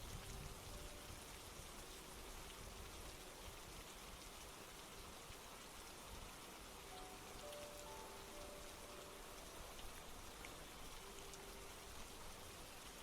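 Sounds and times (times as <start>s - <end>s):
light rainfall hiss: 0.0s - 13.0s
raindrop ticks: 6.9s - 12.2s.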